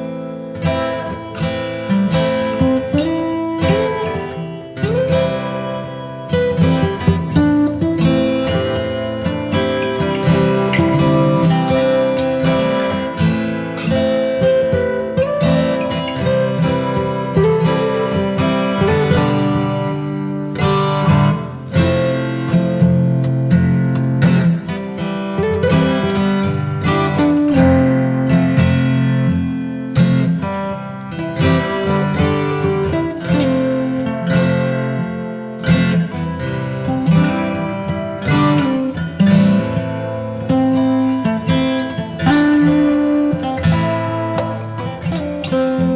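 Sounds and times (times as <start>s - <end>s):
acoustic guitar strumming: 0.0s - 45.9s.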